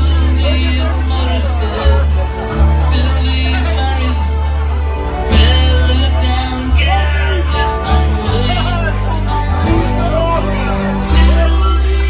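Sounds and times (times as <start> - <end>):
live rock band playing: 0.0 - 12.0
steady bass line: 0.0 - 12.0.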